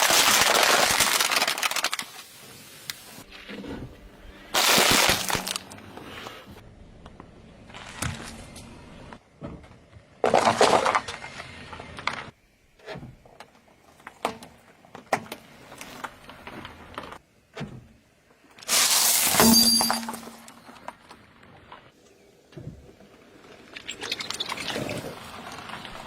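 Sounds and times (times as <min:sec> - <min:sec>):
sharp cracks and snaps: 0:00.0 - 0:02.3
objects crunching under tyre: 0:04.4 - 0:06.5, 0:07.6 - 0:12.4.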